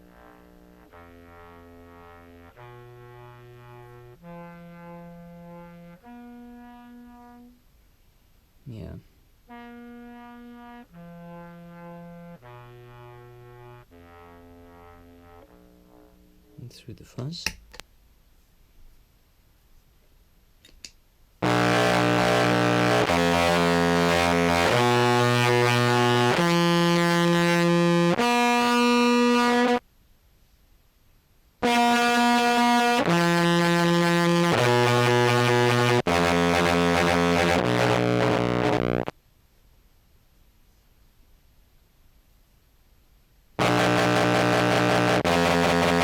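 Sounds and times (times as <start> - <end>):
fuzz-distorted contrabass clarinet: 0.0 - 7.6, 9.5 - 16.5, 21.4 - 29.8, 31.6 - 39.1, 43.6 - 46.0.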